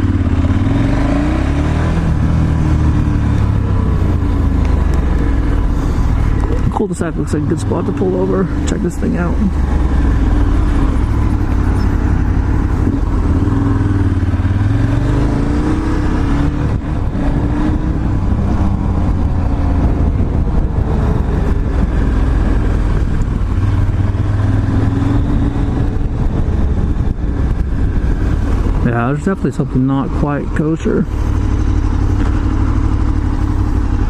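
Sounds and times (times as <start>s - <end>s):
motorcycle engine running slowly: 2.1s - 15.0s, 31.1s - 34.0s.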